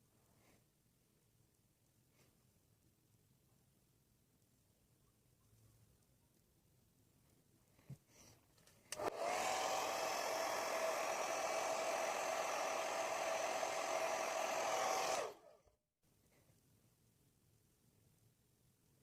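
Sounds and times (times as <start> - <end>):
hair dryer switch click: 8.9 - 9.5
hair dryer running: 9.0 - 15.6.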